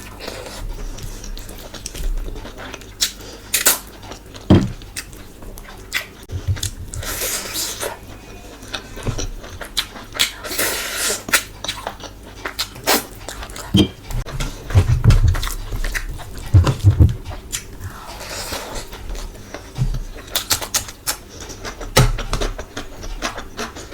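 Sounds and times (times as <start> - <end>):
wet chewing and mouth smacks: 1.0 - 7.9, 8.6 - 14.7.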